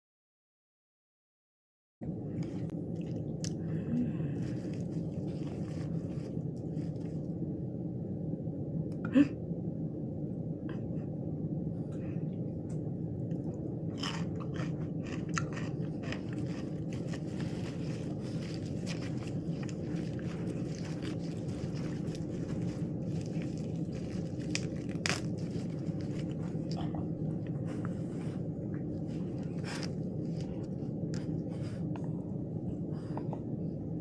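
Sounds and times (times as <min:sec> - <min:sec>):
steady low hum: 0:02.0 - 0:34.0
crunchy chewing and biting: 0:04.3 - 0:07.3, 0:13.3 - 0:31.9.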